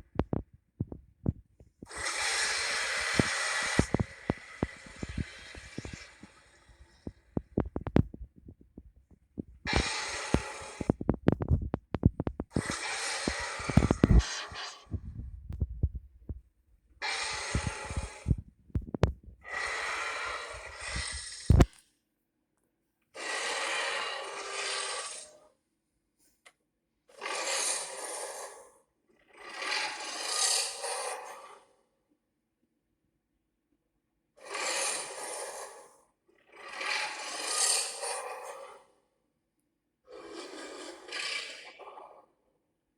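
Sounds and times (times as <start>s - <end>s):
crackle: 0.0s - 16.4s, 17.0s - 21.9s
monster roaring: 1.9s - 7.0s, 9.7s - 11.0s, 12.5s - 14.8s, 17.0s - 18.3s.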